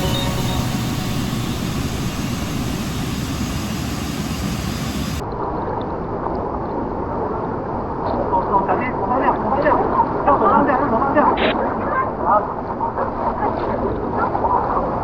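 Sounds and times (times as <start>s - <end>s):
waterfall rushing: 0.0s - 5.2s.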